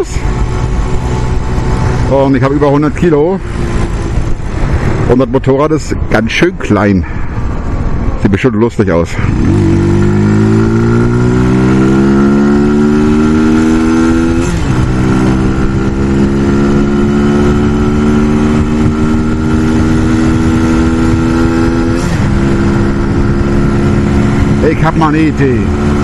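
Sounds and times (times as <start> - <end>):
motorcycle engine accelerating: 0.0 - 5.2, 9.2 - 26.0
wind rushing past: 0.0 - 8.2.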